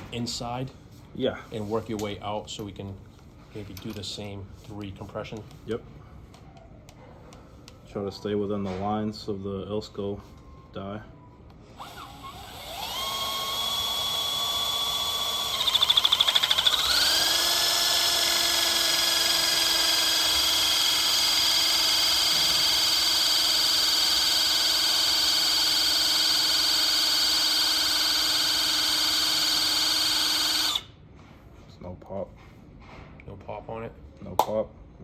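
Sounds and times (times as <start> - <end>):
hydraulic crimper pump motor whine: 11.8 - 30.9.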